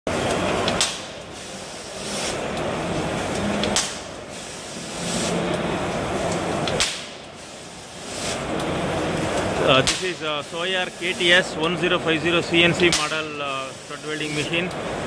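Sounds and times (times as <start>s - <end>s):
welding machine hissing: 0.1s - 15.0s
sharp snap: 0.7s - 1.1s, 3.6s - 4.0s, 6.7s - 7.2s, 9.8s - 10.2s, 12.9s - 13.2s.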